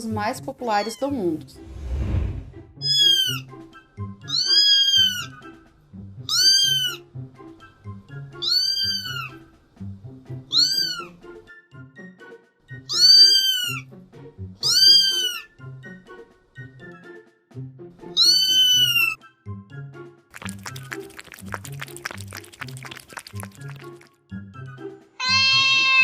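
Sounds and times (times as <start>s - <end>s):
background music: 0.0s - 26.0s
cat meowing: 2.8s - 3.4s, 4.3s - 5.3s, 6.3s - 7.0s, 8.4s - 9.4s, 10.5s - 11.2s, 12.9s - 13.8s, 14.6s - 15.5s, 18.2s - 19.2s, 25.2s - 26.0s.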